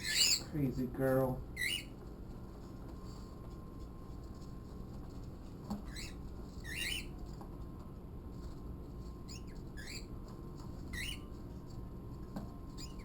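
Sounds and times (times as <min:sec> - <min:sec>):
bird chirping: 0:00.0 - 0:00.5, 0:01.6 - 0:01.9, 0:05.9 - 0:07.1, 0:09.3 - 0:10.1, 0:10.9 - 0:11.3
low room hum: 0:00.0 - 0:13.0.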